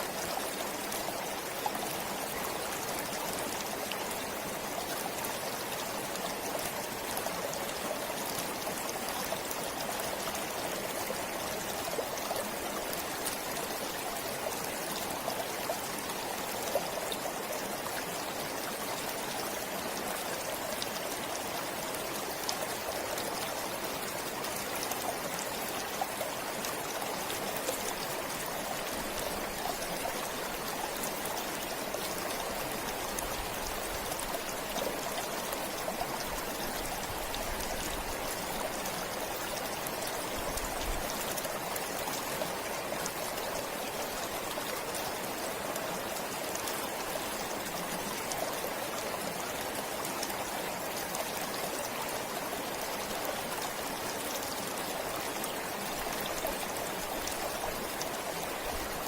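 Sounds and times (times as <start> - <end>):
stream flowing: 0.0 - 59.0.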